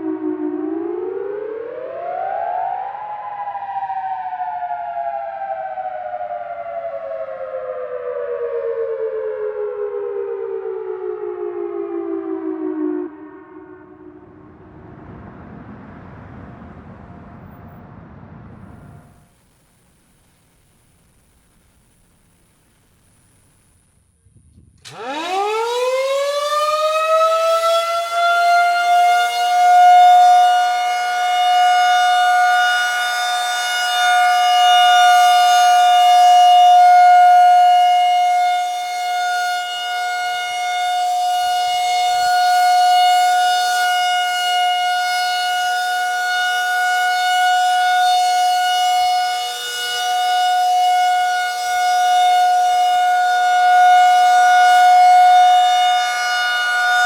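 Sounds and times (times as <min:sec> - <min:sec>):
warning siren winding up: 0:24.8 - 0:57.0.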